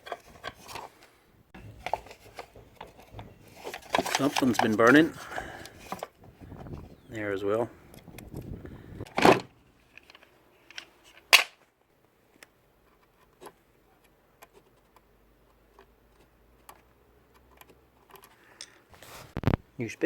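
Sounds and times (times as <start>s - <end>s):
hand tools clicking and knocking: 1.6s - 6.1s.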